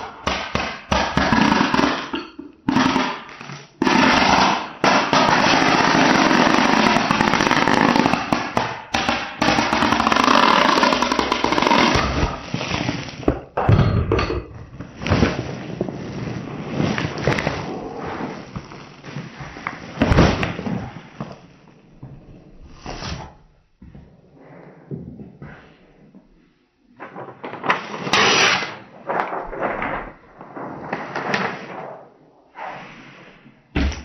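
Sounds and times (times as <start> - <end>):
packing materials rustling: 9.4 - 13.4, 14.8 - 21.6.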